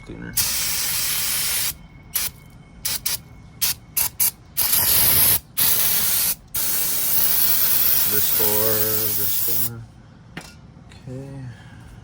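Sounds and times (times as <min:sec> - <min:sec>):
aerosol can spraying: 0:00.4 - 0:02.3, 0:02.9 - 0:09.7.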